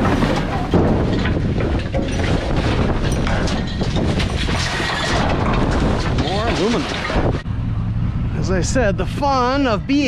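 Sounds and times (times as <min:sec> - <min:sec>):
scrap metal rattling in dumpster: 0:00.0 - 0:07.4.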